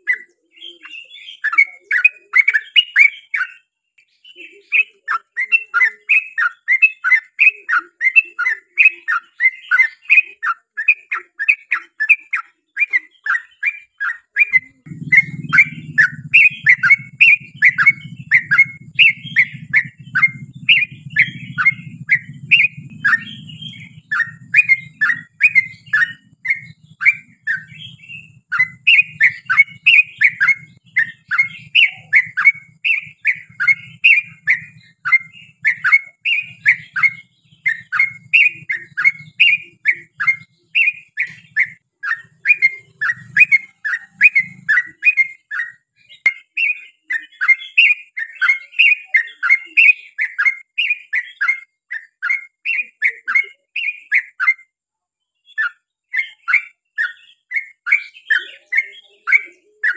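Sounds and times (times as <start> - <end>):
bird singing warbled notes: 0.0 - 54.7, 55.4 - 59.9.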